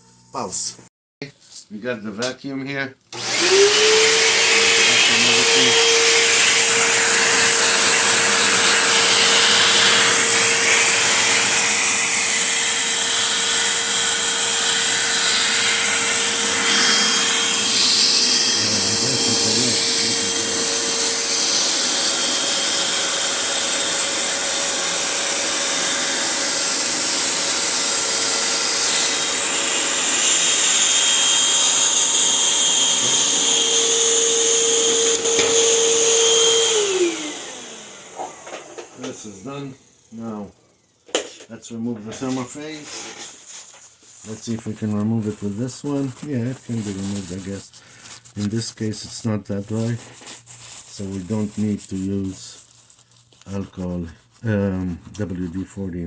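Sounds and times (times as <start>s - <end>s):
vacuum cleaner motor whine: 3.1s - 43.3s.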